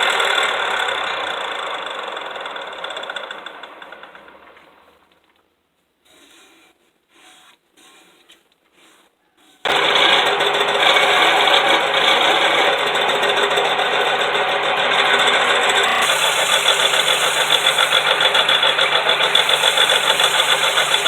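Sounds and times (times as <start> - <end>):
wood lathe running: 0.0 - 4.6, 9.6 - 21.0.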